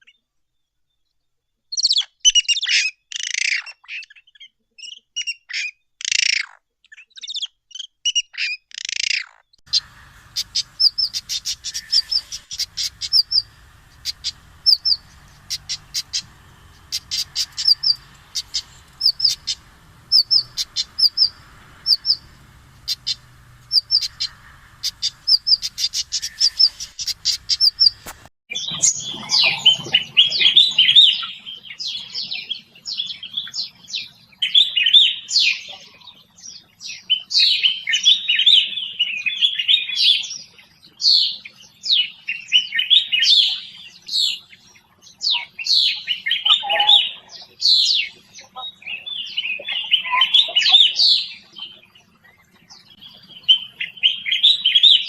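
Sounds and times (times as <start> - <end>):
bird warbling song: 8.8 - 35.5, 41.2 - 55.0
songbirds chirping: 9.1 - 55.0.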